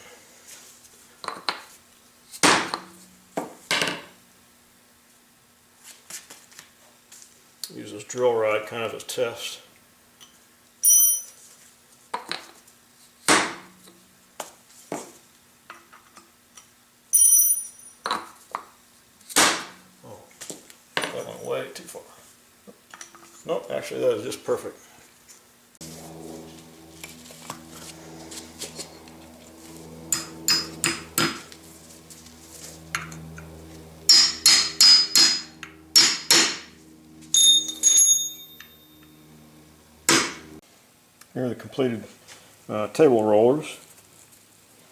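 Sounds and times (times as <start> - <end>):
faint low hum: 25.8 - 40.6.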